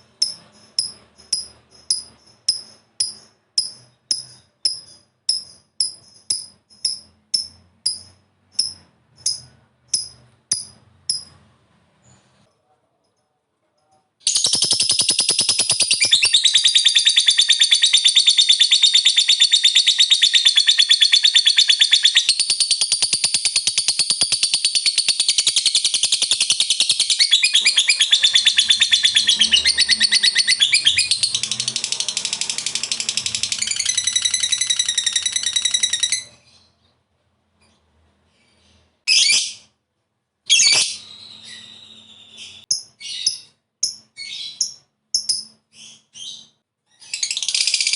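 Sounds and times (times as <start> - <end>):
lovebird chattering trill: 0.2 - 11.4, 14.3 - 31.6.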